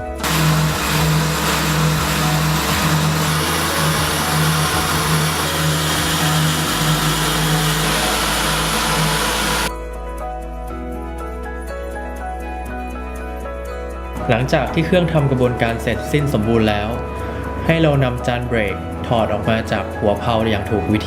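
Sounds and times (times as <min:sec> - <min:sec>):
lathe cutting hiss: 0:00.0 - 0:09.7
motor hum: 0:00.0 - 0:09.7.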